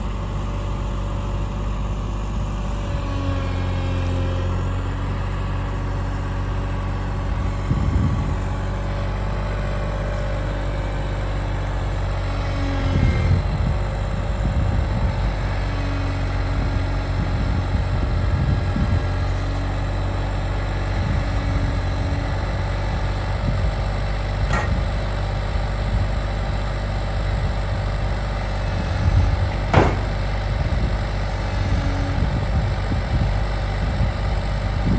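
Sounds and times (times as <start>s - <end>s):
excavator diesel engine running: 0.0s - 34.9s
short knocks: 24.5s - 25.1s, 29.5s - 30.4s.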